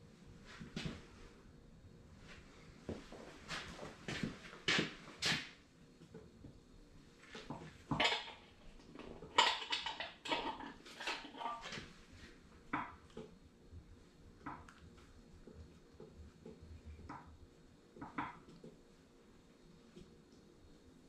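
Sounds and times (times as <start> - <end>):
hand tools clinking and scraping: 7.9 - 8.5, 9.2 - 11.9.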